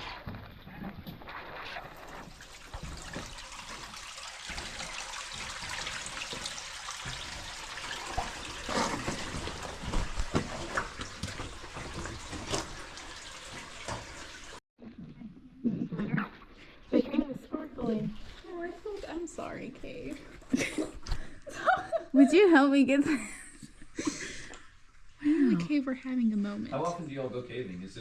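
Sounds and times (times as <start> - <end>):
running water echoing in a cave: 0.0 - 14.6
knocks and scrapes: 8.1 - 14.3.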